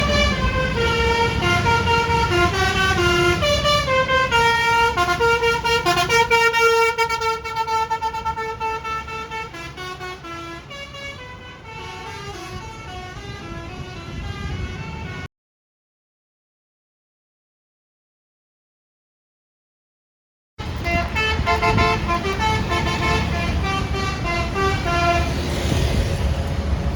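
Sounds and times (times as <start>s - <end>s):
multi-tone air horn tune: 0.0s - 15.3s, 20.8s - 25.5s
low engine rumble: 20.6s - 25.3s.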